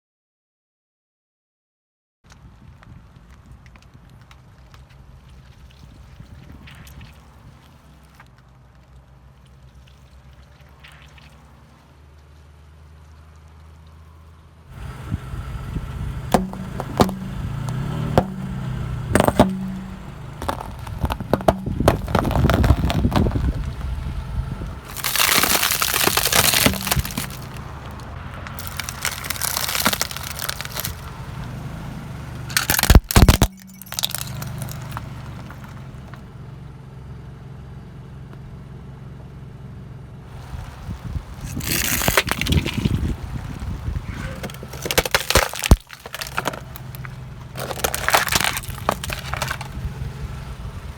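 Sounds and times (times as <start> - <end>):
car engine running low: 2.4 - 50.9
tyre crushing crunchy objects: 16.2 - 31.7, 32.5 - 36.2, 40.3 - 50.4.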